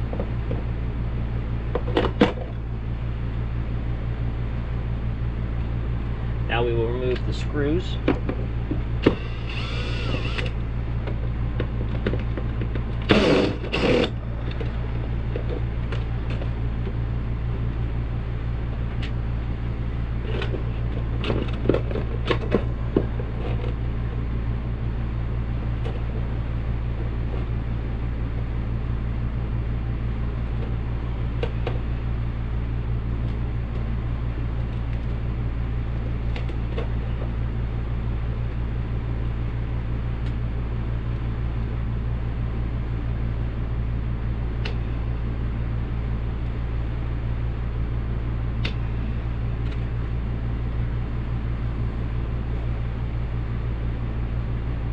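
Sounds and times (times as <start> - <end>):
steady low hum: 0.0 - 54.9
short mechanical bursts: 9.1 - 10.6, 13.0 - 14.2.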